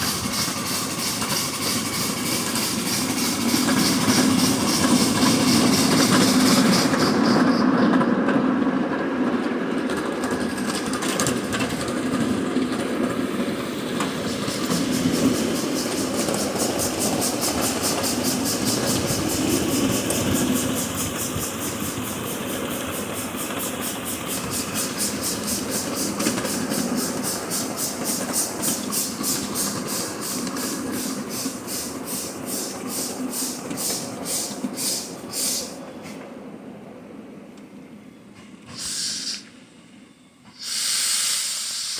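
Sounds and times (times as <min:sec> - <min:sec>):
steam locomotive chuffing: 0:00.0 - 0:36.3, 0:38.3 - 0:41.9
train rumbling: 0:00.0 - 0:41.9.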